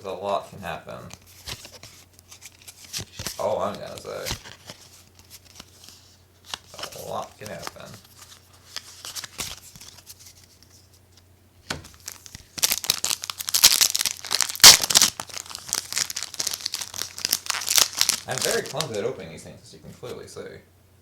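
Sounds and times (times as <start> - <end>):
foil wrapper tearing and crinkling: 11.8 - 19.0.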